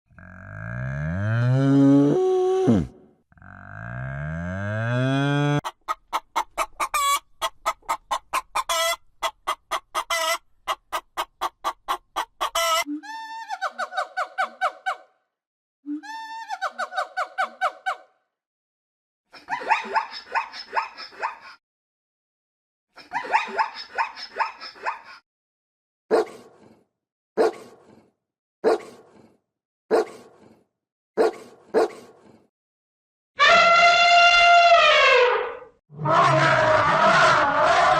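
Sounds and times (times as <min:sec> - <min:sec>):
chicken clucking: 0:05.6 - 0:12.9
dog barking: 0:26.1 - 0:26.5, 0:27.4 - 0:27.8, 0:28.6 - 0:29.0, 0:29.9 - 0:30.4, 0:31.2 - 0:32.1.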